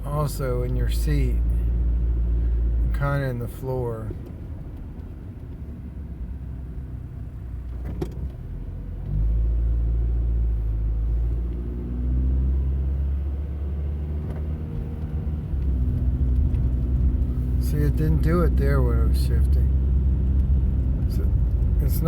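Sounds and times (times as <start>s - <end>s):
car engine and road rumble: 0.0s - 22.0s.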